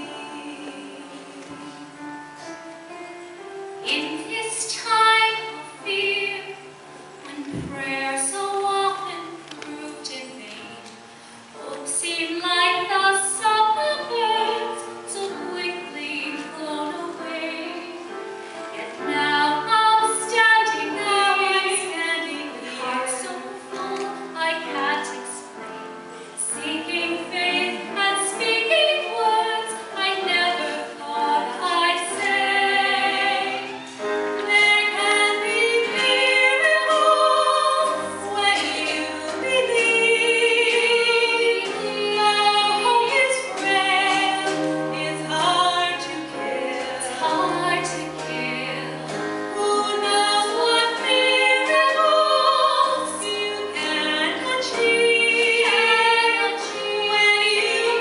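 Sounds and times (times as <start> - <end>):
female choir singing a ballad: 0.0 - 58.0.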